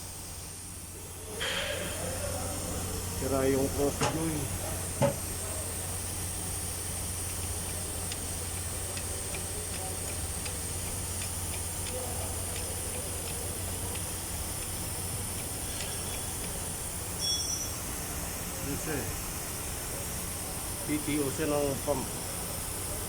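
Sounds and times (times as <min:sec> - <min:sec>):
driveline turning a pump: 0:00.0 - 0:23.0
light ticks from shaft: 0:07.2 - 0:14.8, 0:15.4 - 0:16.6.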